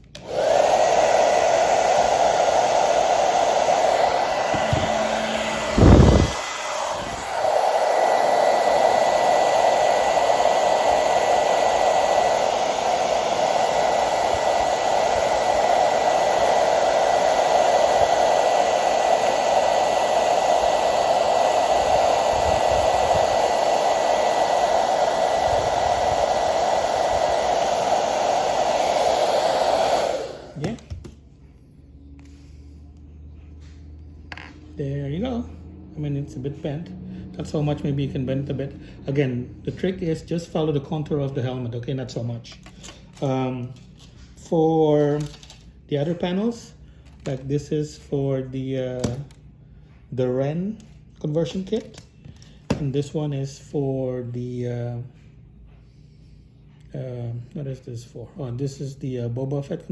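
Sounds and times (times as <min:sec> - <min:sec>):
blow dryer running: 0:00.0 - 0:31.3.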